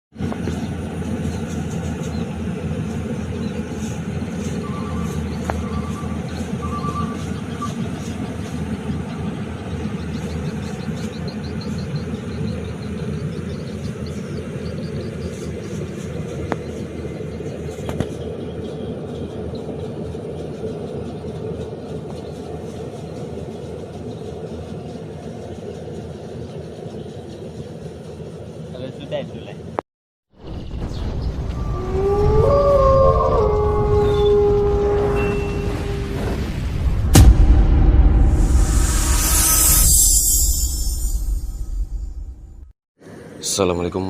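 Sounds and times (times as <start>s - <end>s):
harvester engine running: 0.2s - 29.0s.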